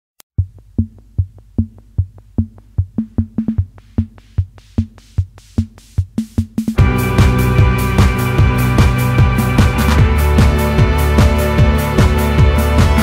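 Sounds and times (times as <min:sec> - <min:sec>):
drum-machine kick: 0:00.4 - 0:07.4
electronic music with sustained chords: 0:06.8 - 0:13.0.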